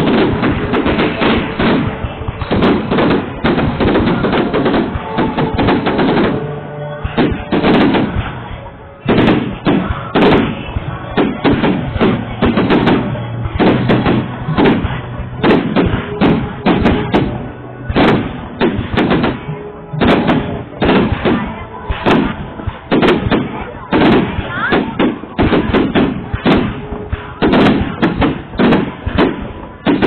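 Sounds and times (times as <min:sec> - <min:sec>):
fireworks bangs: 0:00.0 - 0:30.0.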